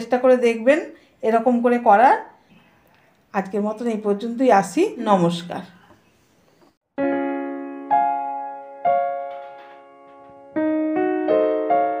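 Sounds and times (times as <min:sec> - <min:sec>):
piano notes and chords: 0:06.9 - 0:12.0.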